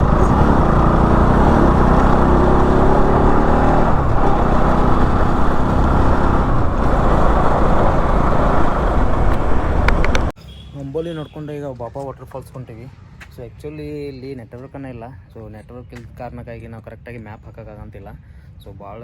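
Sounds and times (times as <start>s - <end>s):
vehicle engine speeding up: 0.0s - 10.3s.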